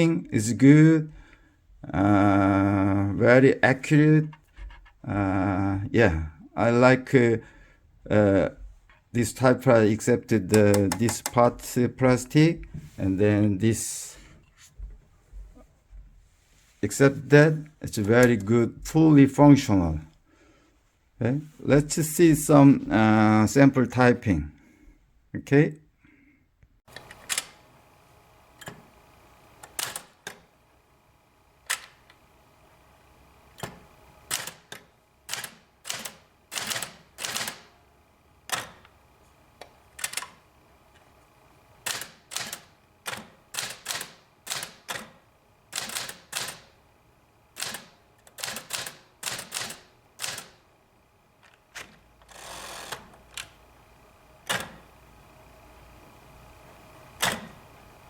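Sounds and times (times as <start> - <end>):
typewriter key strikes: 10.6 - 11.5, 41.9 - 45.1, 45.8 - 46.7, 47.6 - 50.6.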